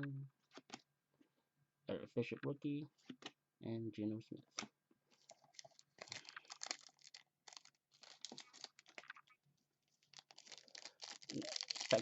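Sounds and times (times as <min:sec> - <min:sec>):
trading cards rustling: 0:05.1 - 0:09.3, 0:10.0 - 0:12.0
foil wrapper crinkling: 0:05.3 - 0:09.3, 0:10.0 - 0:12.0.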